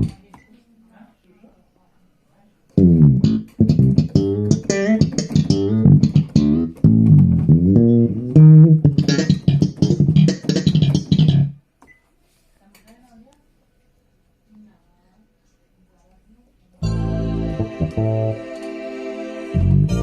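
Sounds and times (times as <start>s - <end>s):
bass guitar quick notes: 2.8s - 11.6s, 16.8s - 18.5s, 19.6s - 20.0s.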